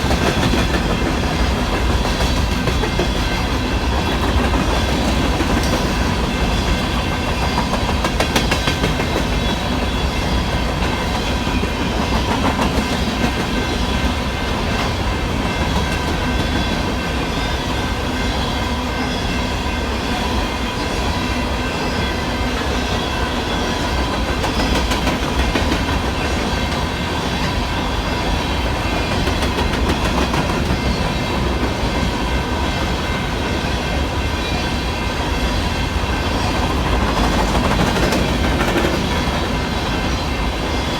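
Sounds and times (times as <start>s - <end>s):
crossing bell ringing: 0.0s - 40.9s
freight train rumbling: 0.0s - 40.9s.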